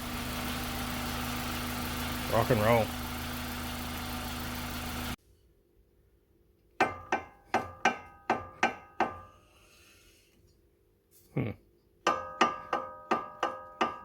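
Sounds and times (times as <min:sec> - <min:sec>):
car engine idling: 0:00.0 - 0:05.2.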